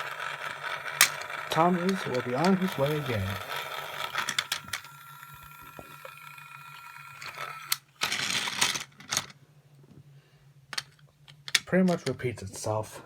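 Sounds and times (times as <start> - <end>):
plastic clattering: 0.0 - 6.2, 7.2 - 9.4
toy train gear whir: 0.0 - 9.3.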